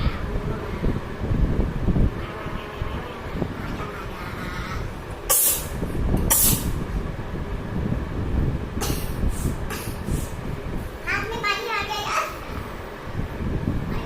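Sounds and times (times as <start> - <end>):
low microphone rumble: 0.0 - 14.0
person sneezing: 5.3 - 5.7, 6.3 - 6.7.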